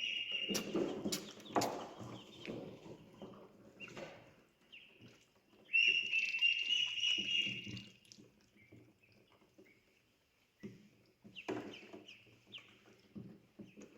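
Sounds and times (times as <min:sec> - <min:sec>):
ducklings and chicks peeping: 0:00.0 - 0:13.9
bills dabbling in water: 0:00.4 - 0:02.8.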